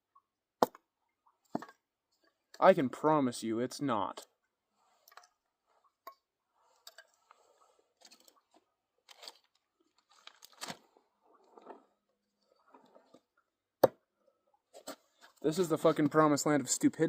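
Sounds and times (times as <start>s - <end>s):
wood cracking: 8.0s - 11.7s.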